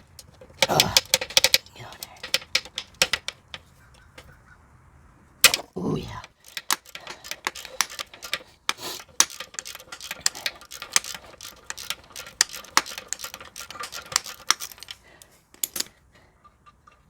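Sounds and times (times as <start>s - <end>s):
ratchet wrench clicking: 0.0s - 4.1s, 6.2s - 15.0s.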